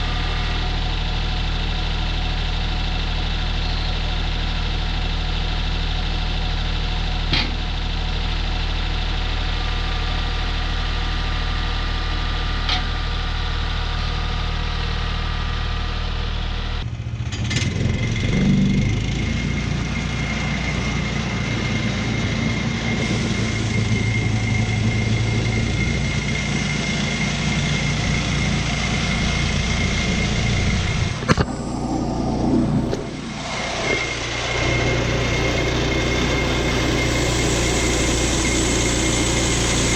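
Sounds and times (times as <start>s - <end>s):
steady high whine: 0.0s - 2.5s, 18.8s - 39.9s
small gasoline engine running: 0.0s - 32.2s, 33.0s - 39.9s.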